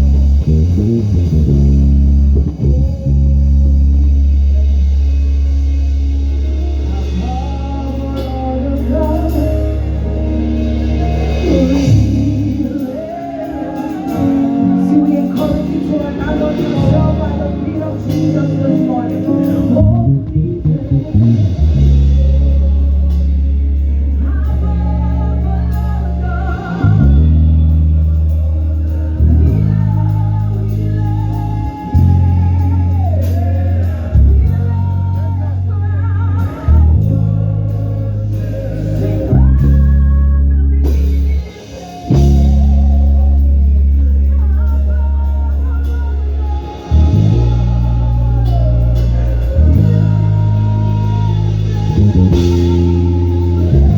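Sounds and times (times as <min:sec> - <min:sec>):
bass guitar low notes: 0:00.0 - 0:53.9
guitar: 0:00.0 - 0:53.9
person singing: 0:00.0 - 0:53.9.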